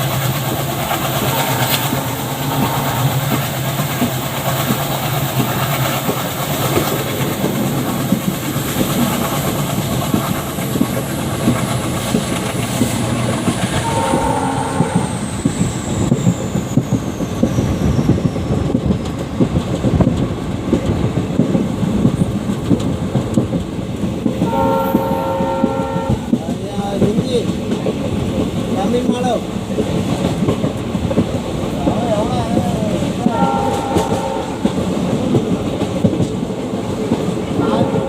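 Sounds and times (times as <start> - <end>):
diesel locomotive engine chugging: 0.0 - 38.0
train wheels clattering on rails: 0.0 - 38.0
train horn blast: 1.2 - 3.4, 13.8 - 15.2, 24.4 - 26.4, 33.3 - 34.8, 37.6 - 38.0.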